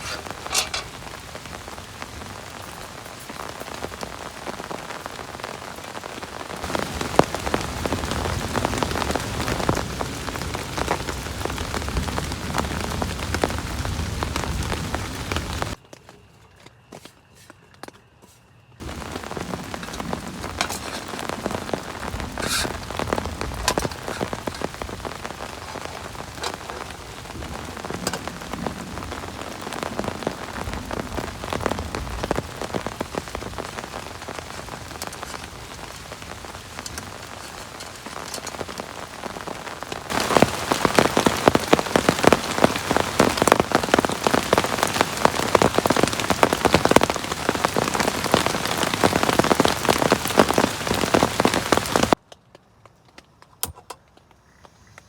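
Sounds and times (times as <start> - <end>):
heavy rain falling: 0.0 - 15.8, 18.8 - 52.2.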